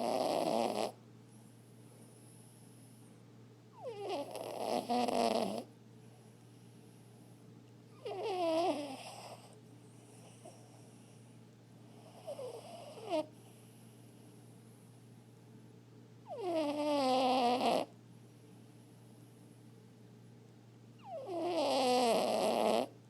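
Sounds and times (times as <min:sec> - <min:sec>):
dog snoring: 0:00.0 - 0:01.4, 0:03.7 - 0:05.7, 0:07.9 - 0:11.2, 0:11.9 - 0:14.1, 0:16.2 - 0:18.0, 0:21.0 - 0:23.0.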